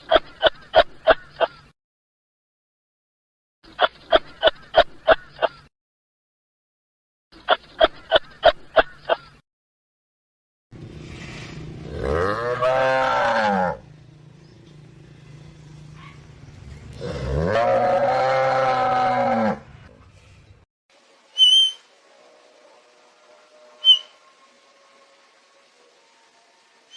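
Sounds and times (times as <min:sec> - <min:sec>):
long rising and falling calls: 0:21.2 - 0:26.9.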